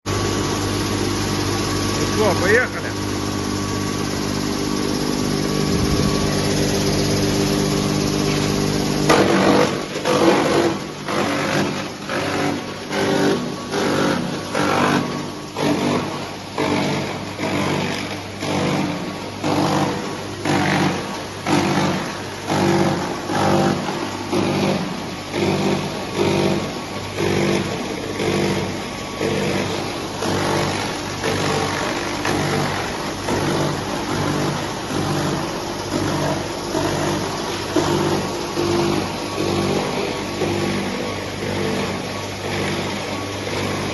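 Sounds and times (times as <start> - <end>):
wood crusher humming: 0.1 - 43.9
wood being crushed: 9.0 - 18.7.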